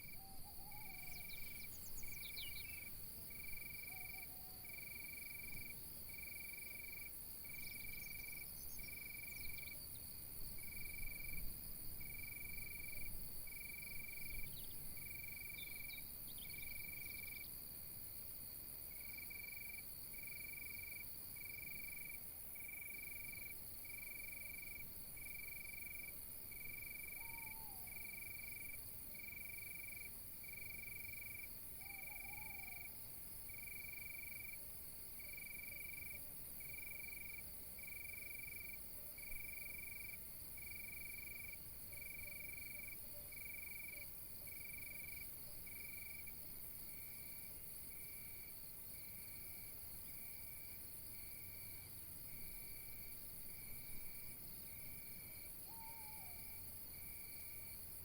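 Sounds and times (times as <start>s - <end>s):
cricket-like chirp: 0.0s - 58.0s
insect high trill: 30.6s - 33.0s.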